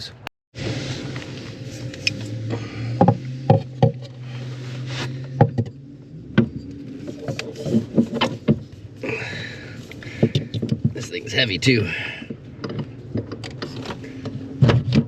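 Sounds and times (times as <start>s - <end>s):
steady low hum: 0.6s - 15.0s
heavy motor knocking and clunking: 2.2s - 4.4s, 5.2s - 8.7s.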